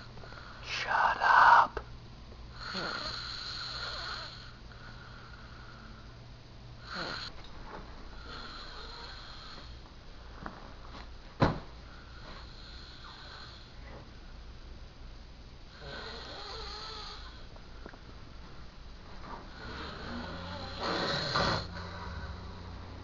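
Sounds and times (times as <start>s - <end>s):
noisy breathing: 0.0s - 1.8s, 2.5s - 7.4s, 8.1s - 10.5s, 11.8s - 13.8s, 19.3s - 23.0s
man snoring: 2.5s - 5.8s, 6.8s - 7.3s, 8.2s - 9.8s, 12.4s - 13.7s, 15.7s - 17.4s, 19.5s - 21.8s.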